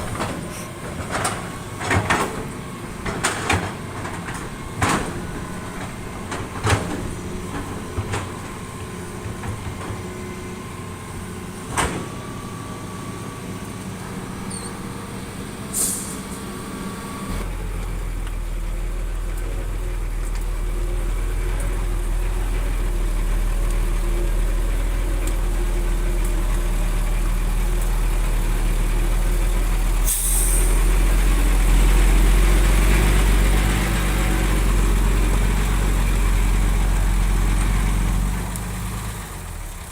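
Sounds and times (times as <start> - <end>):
deep engine rumble: 0.0 - 39.9
diesel machinery running: 0.0 - 39.9
short hisses: 15.7 - 16.4.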